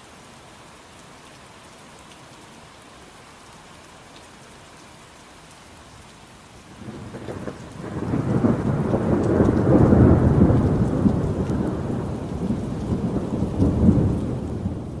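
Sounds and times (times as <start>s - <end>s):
steady rain: 0.0s - 15.0s
thunder rolling: 6.8s - 15.0s.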